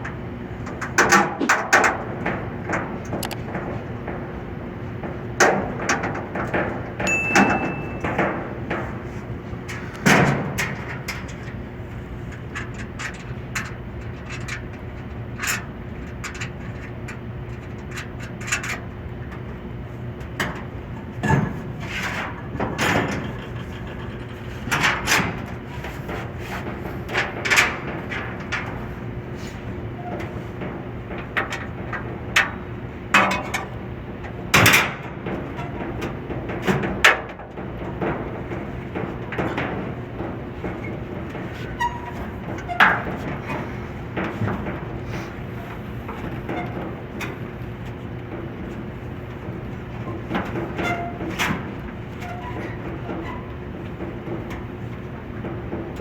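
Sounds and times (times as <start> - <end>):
tools clanking on metal: 7.1 - 8.4.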